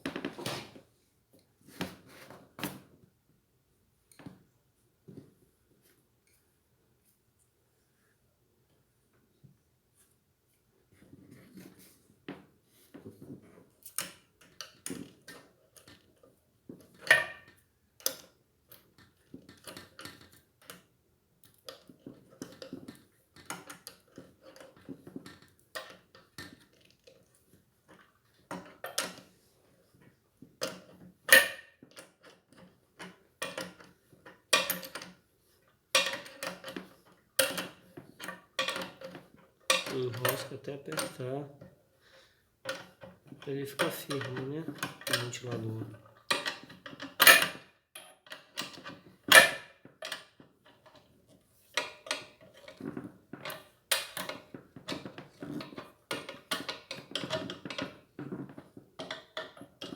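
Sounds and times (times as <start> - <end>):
clicks and metal clinks of parts: 30.0 - 35.2, 35.9 - 41.7, 42.6 - 59.9.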